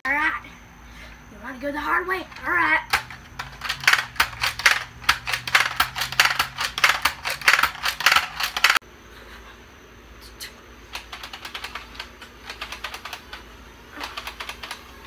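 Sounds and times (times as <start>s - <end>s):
toy blasters clicking: 2.3s - 8.8s, 10.9s - 15.0s.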